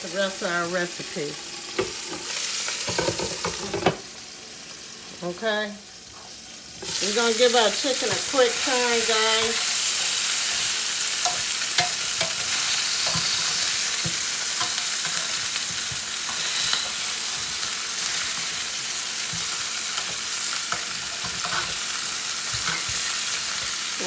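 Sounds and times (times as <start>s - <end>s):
chicken sizzling in a pan: 0.0s - 24.0s.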